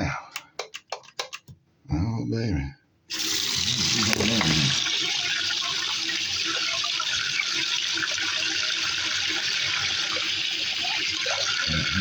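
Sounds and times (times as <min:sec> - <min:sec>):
water running from tap: 0:03.1 - 0:12.0.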